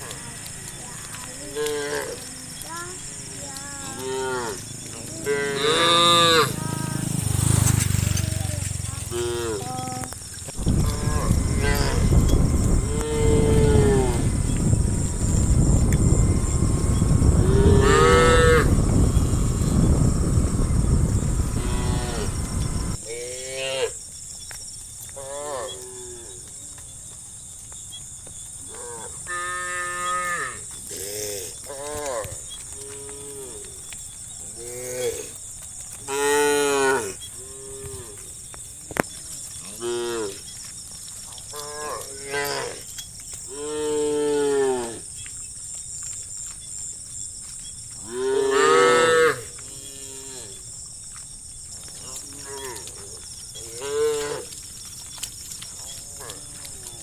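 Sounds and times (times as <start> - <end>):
cattle mooing: 3.4 - 7.0, 8.4 - 10.0, 10.7 - 14.6, 16.3 - 19.8, 21.4 - 23.9.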